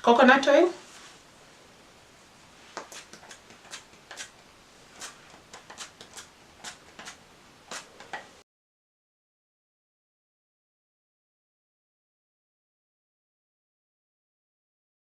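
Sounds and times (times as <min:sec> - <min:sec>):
hands rustling hair: 0:02.6 - 0:08.4.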